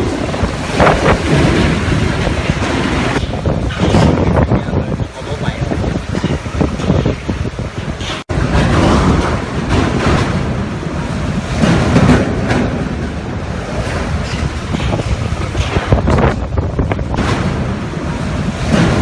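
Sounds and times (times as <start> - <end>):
heavy surf: 0.0 - 19.0
wind rumbling on microphone: 0.0 - 19.0.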